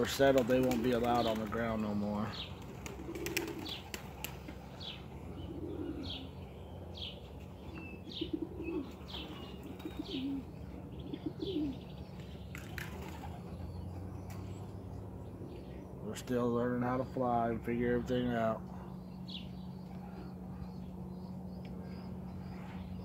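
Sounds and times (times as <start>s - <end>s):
wing claps: 0.0s - 2.0s, 2.6s - 4.6s, 12.2s - 13.3s
pigeons cooing: 0.0s - 16.0s, 18.3s - 23.0s
steady low hum: 0.0s - 23.0s.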